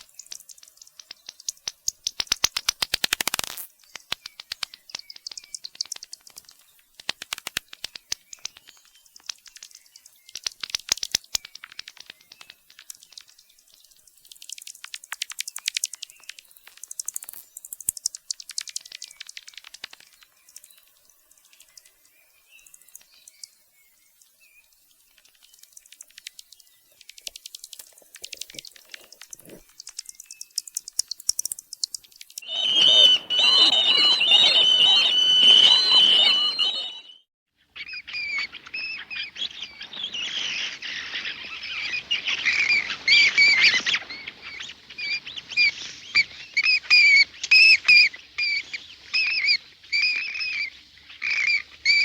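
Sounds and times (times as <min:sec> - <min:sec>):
bats squeaking: 0:14.4 - 0:20.7, 0:25.2 - 0:37.1.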